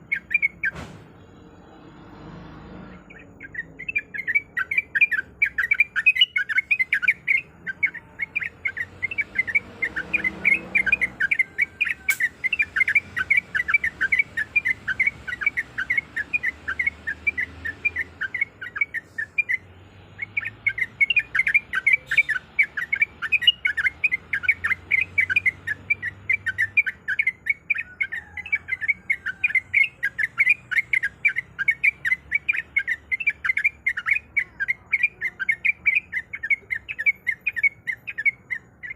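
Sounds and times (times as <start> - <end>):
bird chirping rapidly: 0.0 - 38.9.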